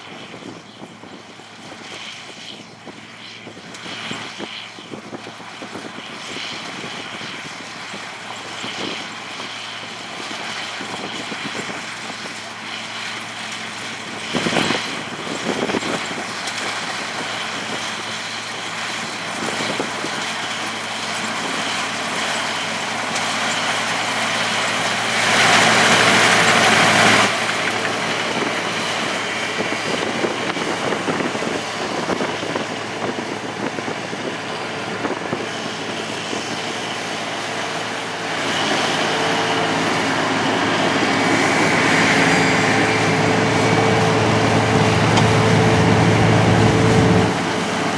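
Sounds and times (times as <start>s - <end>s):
heavy diesel machinery humming: 0.0s - 47.9s
loud rushing noise: 33.9s - 47.9s.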